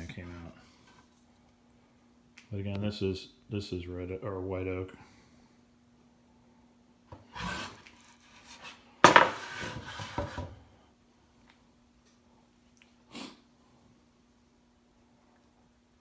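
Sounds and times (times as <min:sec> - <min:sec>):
faint steady hum: 0:00.0 - 0:16.0
wood-on-wood scrape: 0:07.2 - 0:10.6
boards rubbing and clattering: 0:07.3 - 0:10.5
loud wooden knock: 0:09.0 - 0:10.4.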